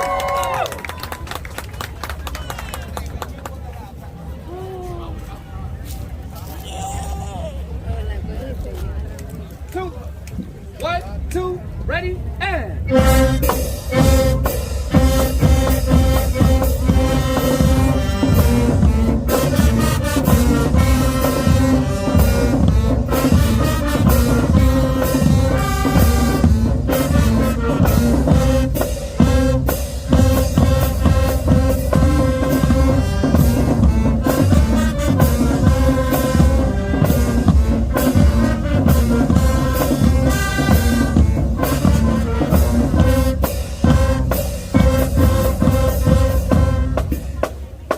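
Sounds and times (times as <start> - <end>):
brass horns playing melody: 12.9 - 47.4
drum-line beat: 12.9 - 47.9.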